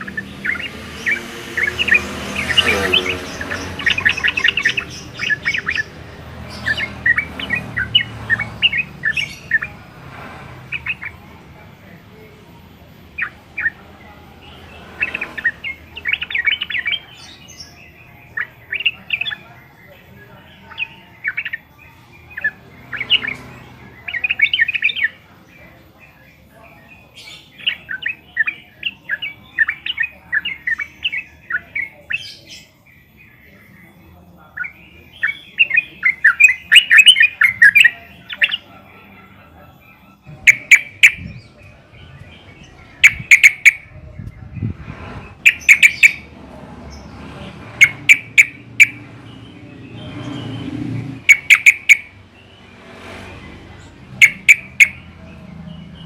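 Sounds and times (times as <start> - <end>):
birds chattering calls: 0.0 - 56.0.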